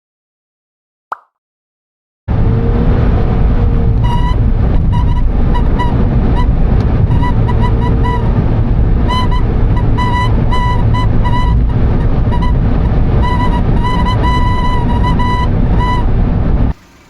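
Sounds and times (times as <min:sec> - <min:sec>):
road and engine noise: 0:02.3 - 0:17.0
high-pitched cabin squeaks: 0:03.9 - 0:17.0.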